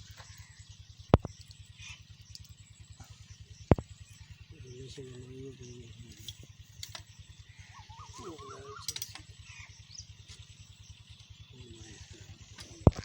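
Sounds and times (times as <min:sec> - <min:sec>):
diesel engine running: 0:00.0 - 0:13.0
short warbling call: 0:07.6 - 0:09.2.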